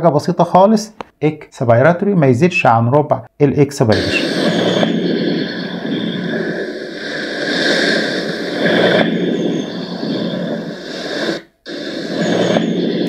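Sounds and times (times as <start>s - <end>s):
breath sounds through stethoscope: 3.9s - 13.0s.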